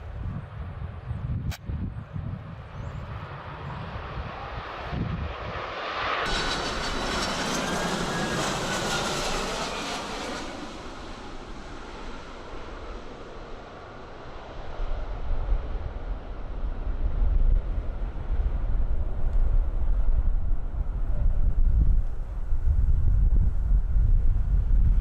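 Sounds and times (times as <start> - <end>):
wind rumble on microphone: 0.0 - 5.6, 14.2 - 25.0
jet engines passing close: 2.1 - 25.0.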